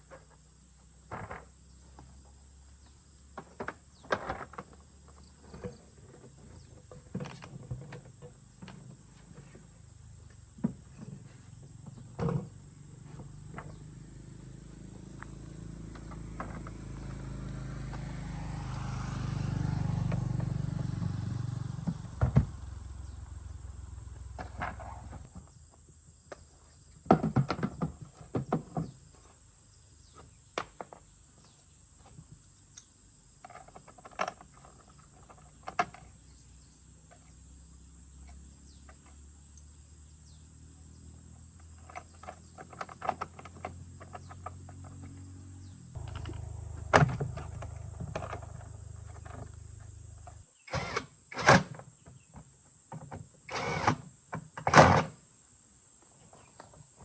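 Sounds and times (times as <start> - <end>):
low mechanical hum: 44.9 - 51.8, 53.5 - 55.0.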